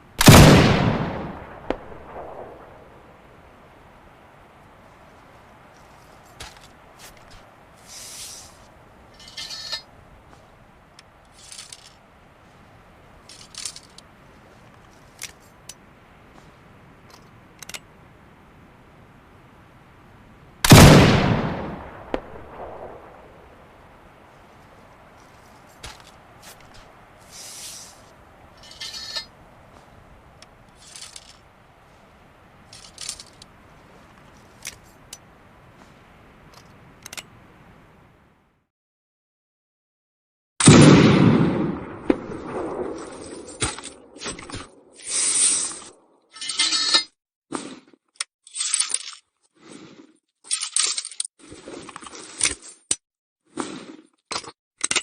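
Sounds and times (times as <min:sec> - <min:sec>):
rifle metallic clinks and rattles: 0:08.0 - 0:09.9, 0:11.0 - 0:12.1, 0:13.2 - 0:14.1, 0:28.6 - 0:29.3, 0:30.7 - 0:31.5, 0:32.7 - 0:33.5, 0:46.3 - 0:47.1, 0:48.2 - 0:49.3, 0:50.4 - 0:53.0, 0:54.3 - 0:55.0
rifle being reloaded: 0:11.3 - 0:12.0, 0:13.3 - 0:14.0, 0:30.8 - 0:31.4, 0:32.7 - 0:33.5.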